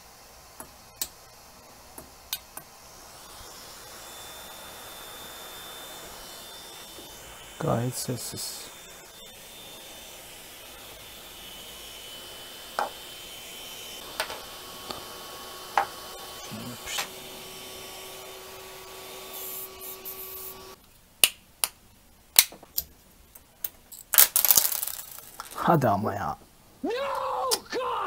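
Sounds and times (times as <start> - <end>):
cooling fan whirring: 0.0 - 20.8.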